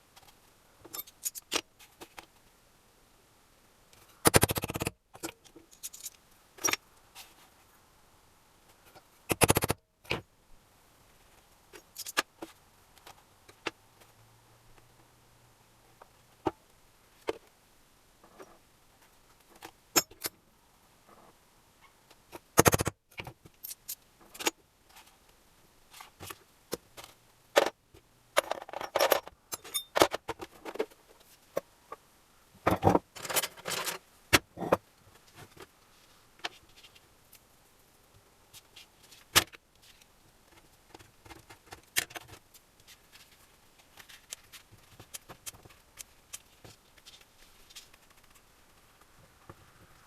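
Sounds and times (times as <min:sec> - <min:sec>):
metal tools clinking and clattering: 0:00.9 - 0:01.6, 0:05.7 - 0:06.8, 0:28.4 - 0:30.2, 0:33.2 - 0:34.0.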